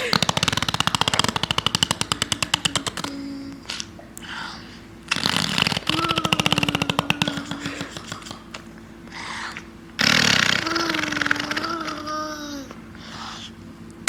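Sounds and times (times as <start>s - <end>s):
toddler blowing raspberries: 5.1s - 8.5s, 9.1s - 13.5s.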